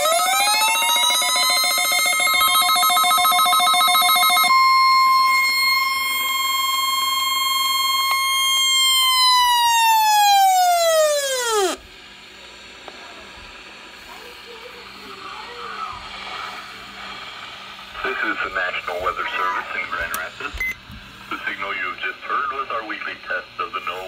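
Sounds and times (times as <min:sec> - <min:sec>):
electronic siren tone: 0:00.0 - 0:11.8.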